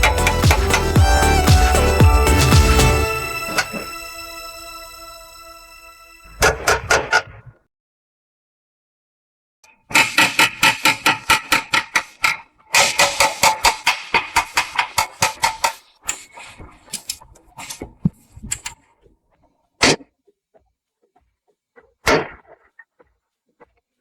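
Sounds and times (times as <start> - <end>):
hammer blows: 0.0 - 6.9.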